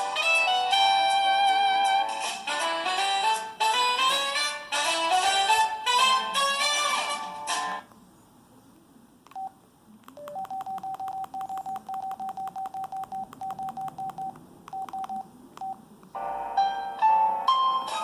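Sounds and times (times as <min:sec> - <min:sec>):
phone ringtone beeps: 0:10.2 - 0:15.8.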